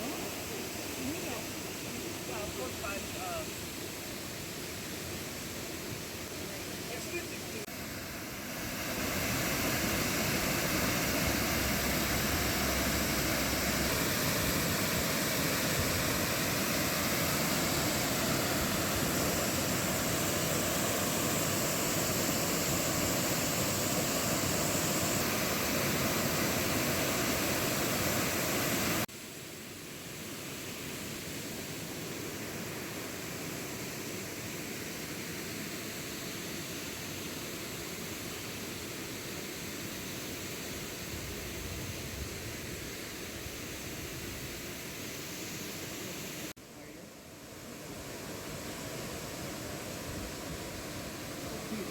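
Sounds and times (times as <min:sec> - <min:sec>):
waterfall rushing: 0:00.0 - 0:29.1
steady hiss: 0:00.0 - 0:51.9.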